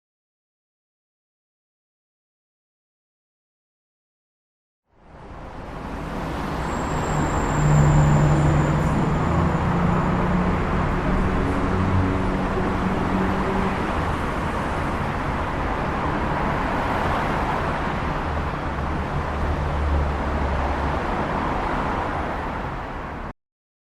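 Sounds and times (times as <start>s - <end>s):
road noise: 4.9s - 23.4s.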